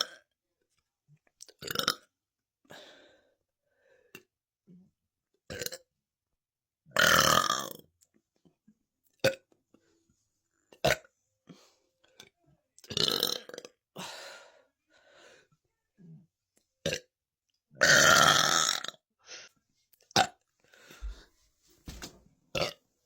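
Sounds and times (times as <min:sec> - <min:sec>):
woman burping: 0:12.9 - 0:13.7.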